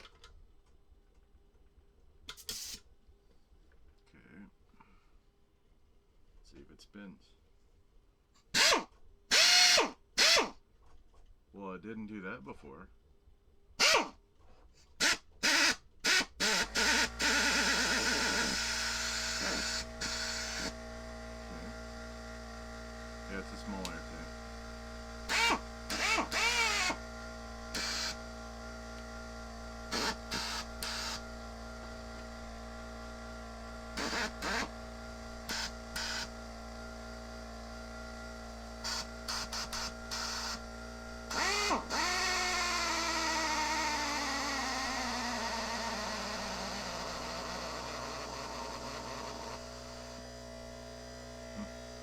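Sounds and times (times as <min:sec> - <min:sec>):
air drill motor whine: 0:08.6 - 0:10.6, 0:13.8 - 0:14.1, 0:15.0 - 0:52.0.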